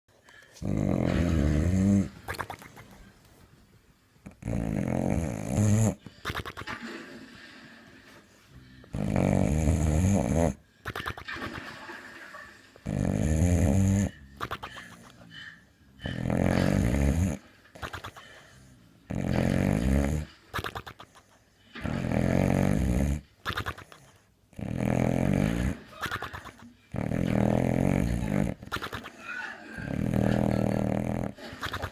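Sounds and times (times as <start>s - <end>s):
dog snoring: 0.6s - 2.9s, 4.2s - 6.7s, 8.8s - 11.2s, 12.8s - 15.3s, 16.0s - 21.2s, 21.8s - 31.9s.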